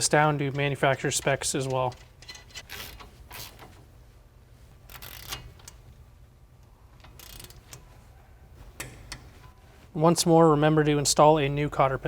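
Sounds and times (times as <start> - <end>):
ratchet wrench clicking: 4.8 - 5.8, 7.0 - 7.8.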